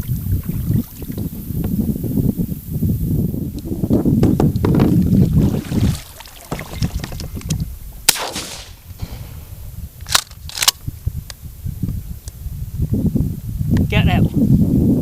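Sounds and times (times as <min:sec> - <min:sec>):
shotgun shot with echo: 0:08.1 - 0:10.7.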